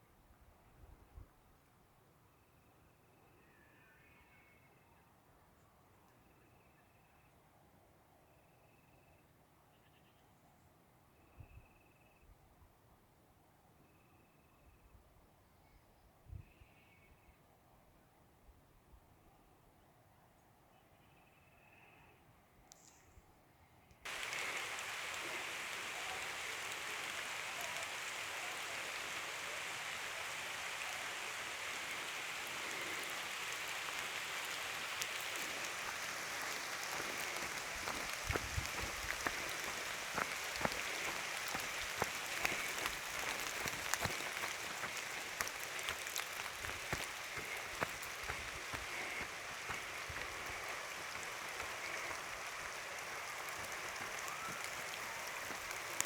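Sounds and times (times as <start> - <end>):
raindrops splatting: 24.1 - 56.0
steady rain falling: 24.1 - 56.0.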